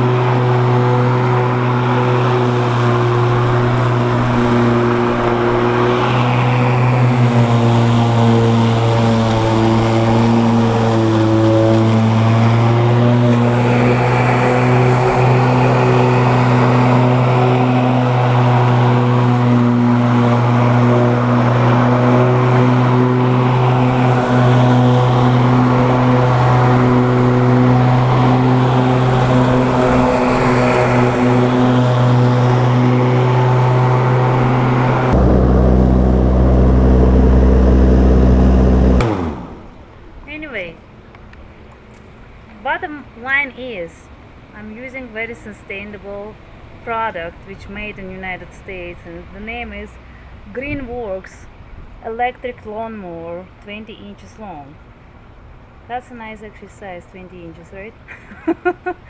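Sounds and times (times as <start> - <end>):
electric lawn mower motor hum: 0.0 - 40.4.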